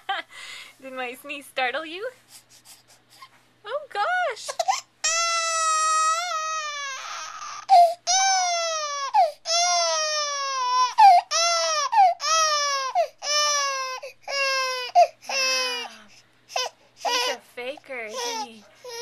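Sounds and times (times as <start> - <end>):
baby crying: 4.5 - 17.4, 18.1 - 19.0.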